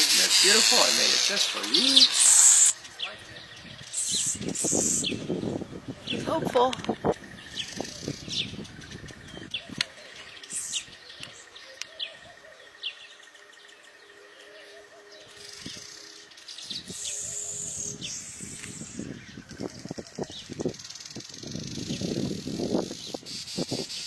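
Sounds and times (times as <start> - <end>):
buzzy high bird call: 0.0 - 6.7, 14.8 - 24.0
birds chirping: 0.0 - 24.0.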